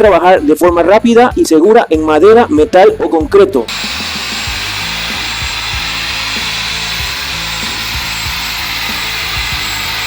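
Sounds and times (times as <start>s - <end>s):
electric drill whirring: 3.7s - 10.0s.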